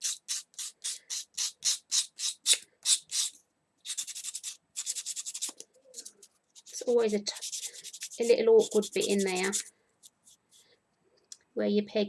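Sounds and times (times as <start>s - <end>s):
sandpaper rubbing on wood: 6.6s - 9.7s.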